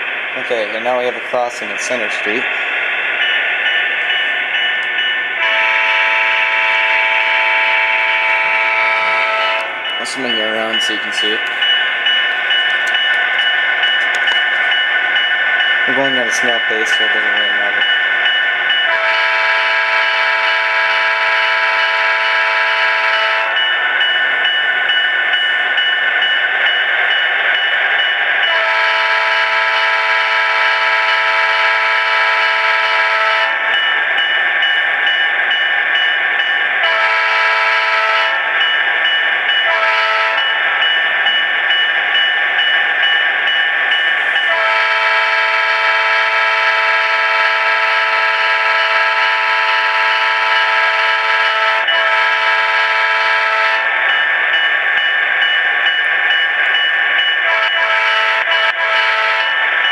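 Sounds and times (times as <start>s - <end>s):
model locomotive horn blasts: 5.4s - 9.7s, 18.9s - 23.6s, 28.5s - 33.6s, 36.8s - 38.4s, 39.7s - 40.4s, 44.5s - 53.9s, 57.4s - 59.6s.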